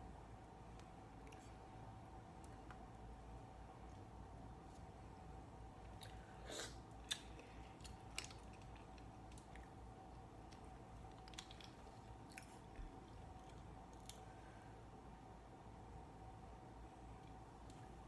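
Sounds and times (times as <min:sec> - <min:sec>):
faint steady hum: 0:00.0 - 0:18.0
chewing and crunching seafood: 0:06.9 - 0:14.3.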